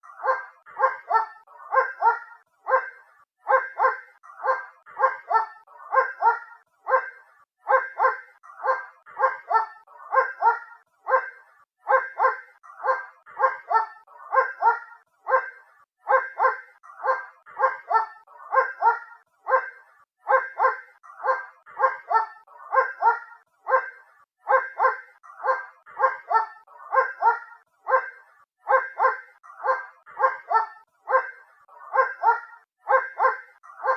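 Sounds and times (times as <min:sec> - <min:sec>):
distant dog barking: 0:00.0 - 0:33.9.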